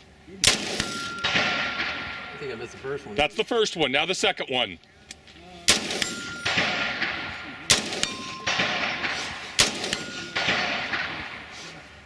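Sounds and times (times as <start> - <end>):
echoing rifle shots: 0.4 - 3.4, 5.7 - 11.8
steel target ringing: 0.5 - 3.4, 5.7 - 11.6.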